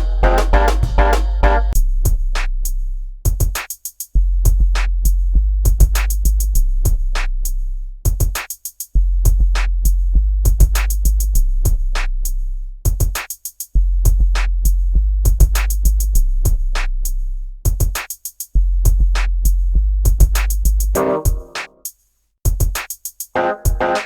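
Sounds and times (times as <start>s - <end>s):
hip hop drum machine beat: 0.0s - 1.8s, 3.3s - 4.7s, 8.1s - 9.5s, 12.9s - 13.7s, 17.7s - 19.1s, 20.1s - 24.0s
deep sustained bass line: 0.0s - 2.3s.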